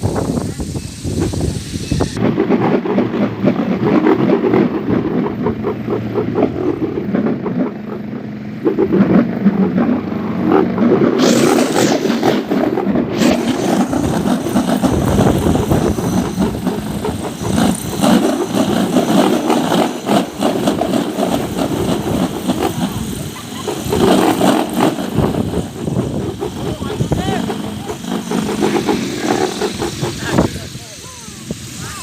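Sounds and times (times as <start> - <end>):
wind hiss: 0.0 - 32.0
wooden propeller toy whirring: 0.0 - 32.0.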